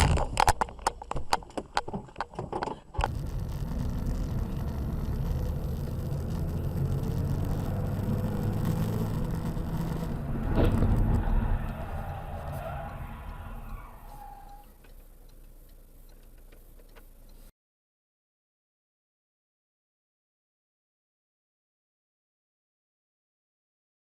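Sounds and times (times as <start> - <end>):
car engine and road noise: 0.0 - 17.5.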